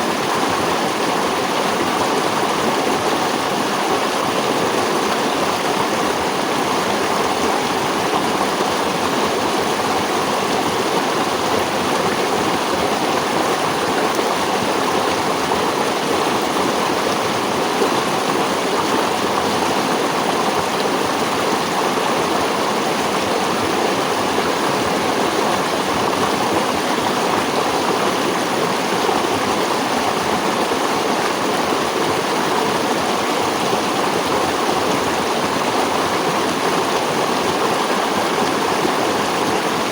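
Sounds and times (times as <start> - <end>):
stream running over rocks: 0.0 - 39.9.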